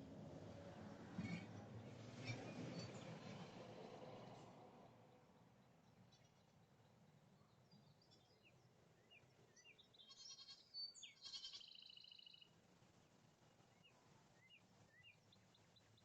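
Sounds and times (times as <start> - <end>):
small birds chirping: 7.7 - 12.5
goat kid bleating: 10.1 - 10.6.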